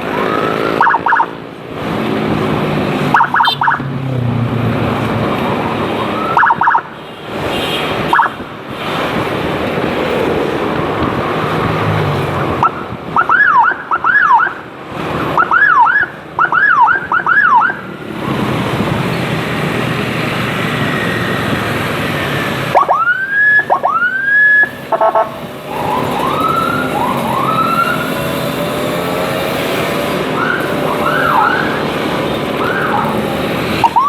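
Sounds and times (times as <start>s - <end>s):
motorcycle electronic siren: 0.0s - 1.5s, 3.1s - 3.9s, 5.3s - 7.0s, 8.1s - 8.4s, 12.4s - 19.1s, 20.4s - 34.0s
road noise: 0.0s - 34.0s
wind rush: 7.4s - 13.2s, 17.9s - 22.8s.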